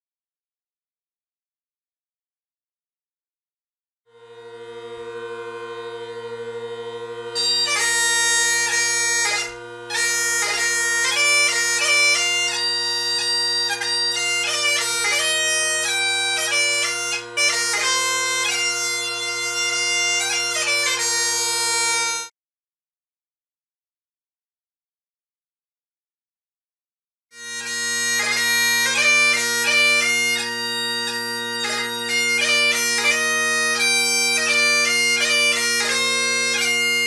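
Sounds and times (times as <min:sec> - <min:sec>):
bagpipe chanter playing tune: 0:04.1 - 0:22.3, 0:27.4 - 0:37.0
bagpipe drones: 0:04.1 - 0:22.3, 0:27.4 - 0:37.0.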